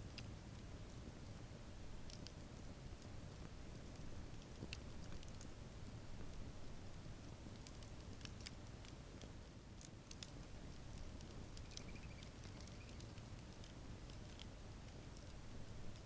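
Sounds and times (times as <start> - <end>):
low rumble of burning: 0.0 - 16.0
campfire snaps and pops: 2.0 - 16.0
faint high chirp: 11.6 - 13.2.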